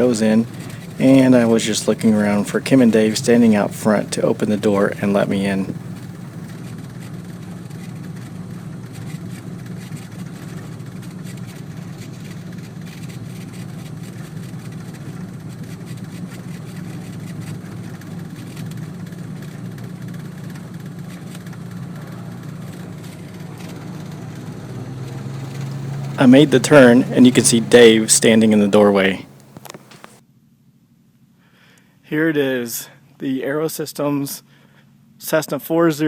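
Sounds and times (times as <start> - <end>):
twin piston engines droning: 0.0 - 6.5, 21.4 - 30.2.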